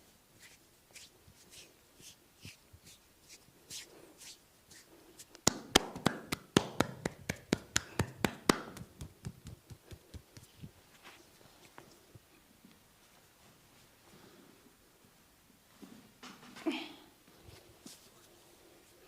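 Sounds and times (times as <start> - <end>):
hands rubbing over skin: 0.4 - 12.0
sharp massage slaps: 5.3 - 10.7.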